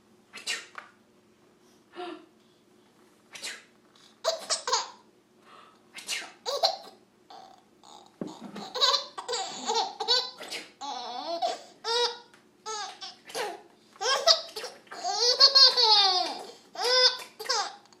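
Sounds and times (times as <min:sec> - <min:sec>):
baby laughing: 0:04.2 - 0:05.0, 0:06.4 - 0:18.0.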